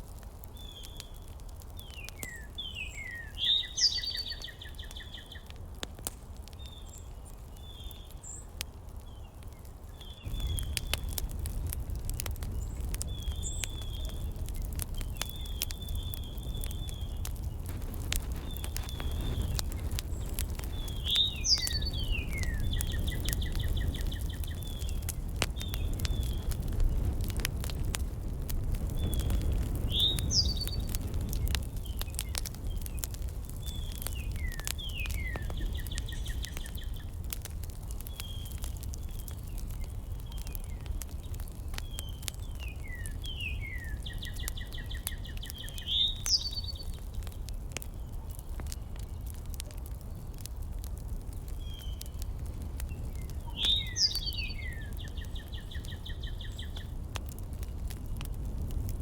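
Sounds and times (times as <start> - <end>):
faint crackles: 0.0 - 59.0
songbird whistles and trill: 1.8 - 5.4, 20.8 - 25.0, 29.0 - 31.0, 41.9 - 46.9, 53.5 - 56.9.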